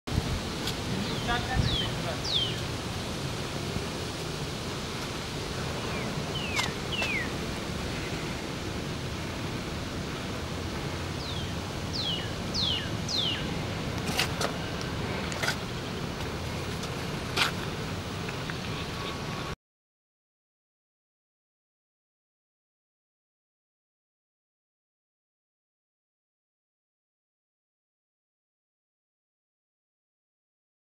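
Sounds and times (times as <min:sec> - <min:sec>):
outdoor background noise: 0:00.1 - 0:19.6
bird whistling falling notes: 0:06.0 - 0:07.3.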